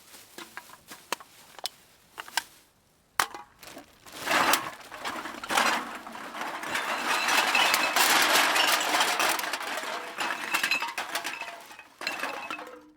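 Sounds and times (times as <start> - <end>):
metal cans clattering: 3.2 - 12.9.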